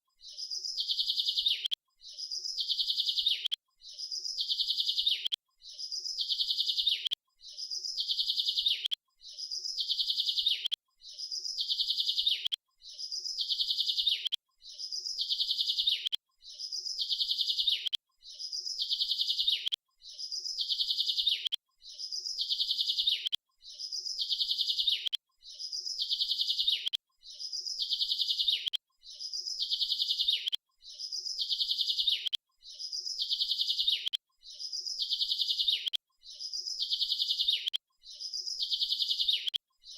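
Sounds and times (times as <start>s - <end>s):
bird chirping trill: 0.2s - 39.9s.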